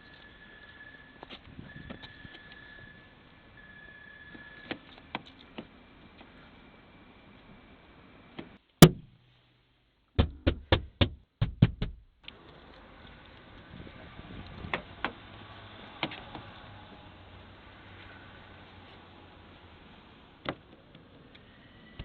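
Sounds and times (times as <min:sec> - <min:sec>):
sharp knocking: 0:08.8 - 0:09.1, 0:10.2 - 0:12.0.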